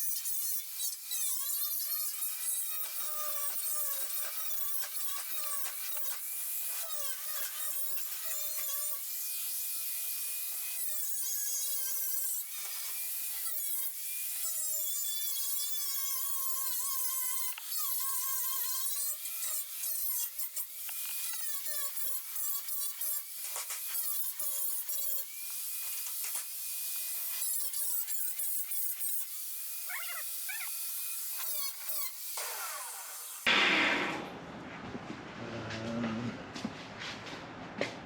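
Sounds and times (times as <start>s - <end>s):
wire wheel power tool whining: 25.2s - 33.6s.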